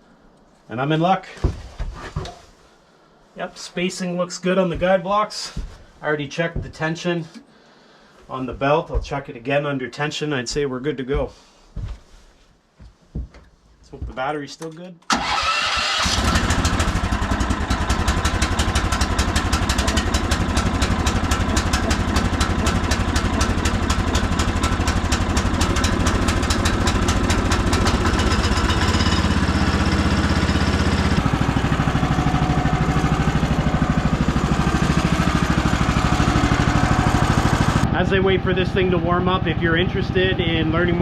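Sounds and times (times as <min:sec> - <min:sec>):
electric starter cranking engine: 0:15.1 - 0:37.9
gasoline engine idling: 0:15.1 - 0:41.0.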